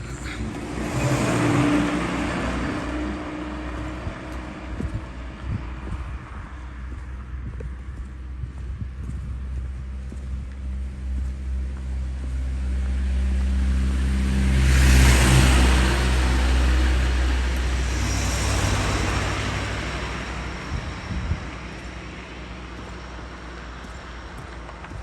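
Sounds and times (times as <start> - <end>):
low engine hum: 0.0 - 25.0.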